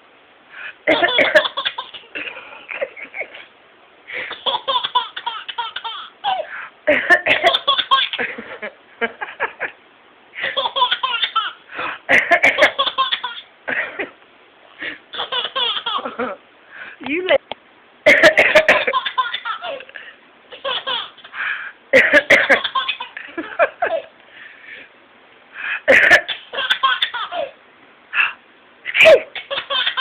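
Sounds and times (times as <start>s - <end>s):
baby laughing: 0.9s - 3.5s, 4.1s - 8.4s, 10.4s - 13.9s, 14.8s - 16.4s, 18.1s - 21.4s, 22.0s - 24.2s, 26.0s - 27.6s, 28.9s - 30.0s.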